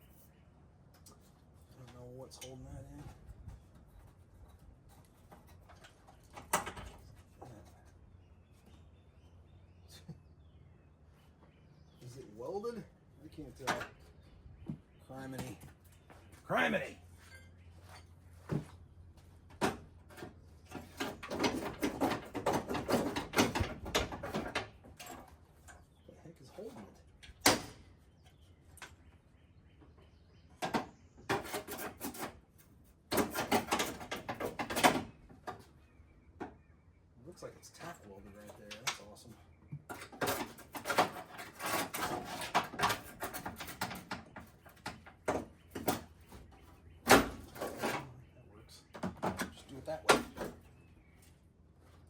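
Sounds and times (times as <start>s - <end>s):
clattering and scraping of parts: 1.0s - 8.0s, 13.5s - 16.4s, 17.1s - 29.0s, 30.5s - 35.8s, 37.8s - 52.0s.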